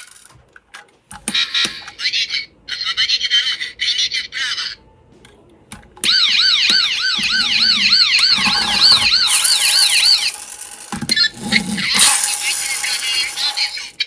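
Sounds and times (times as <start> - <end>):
electronic siren warbling: 6.0 - 14.0.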